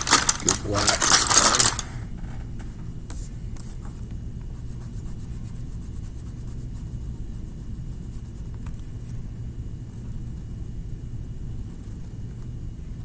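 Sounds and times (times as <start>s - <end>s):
steady low hum: 0.0s - 13.0s
pencil scratching on paper: 4.6s - 8.6s.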